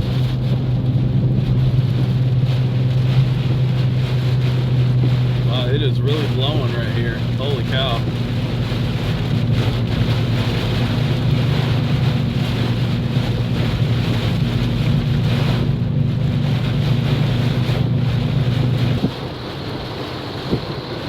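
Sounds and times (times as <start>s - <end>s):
heavy rain on a vehicle: 0.0s - 21.0s
high wind: 0.0s - 21.0s
low vehicle drone: 0.0s - 21.0s.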